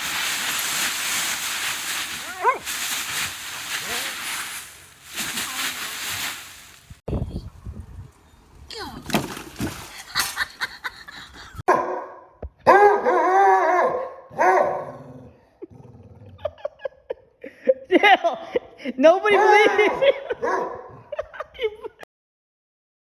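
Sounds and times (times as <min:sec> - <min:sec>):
knocks and rustling: 0:09.0 - 0:10.5.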